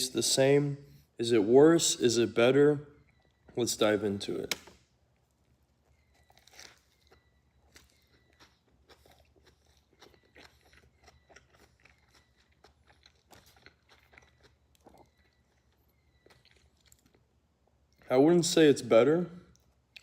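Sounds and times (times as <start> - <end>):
chewing sandwich: 5.1 - 18.1, 19.4 - 20.0.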